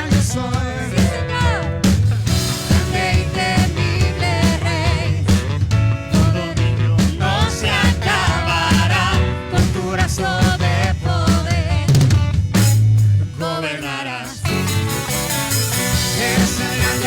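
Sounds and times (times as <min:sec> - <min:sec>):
live band playing worship song: 0:00.0 - 0:17.0
person singing: 0:02.6 - 0:12.2, 0:15.9 - 0:17.0.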